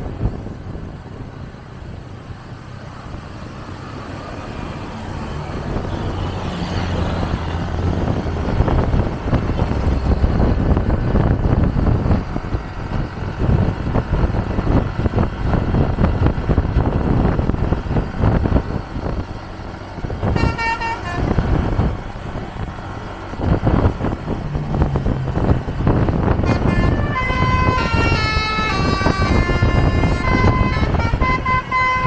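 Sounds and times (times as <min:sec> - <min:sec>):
road noise with buffeting: 0:00.0 - 0:32.0
vehicle engine hum: 0:00.0 - 0:32.0.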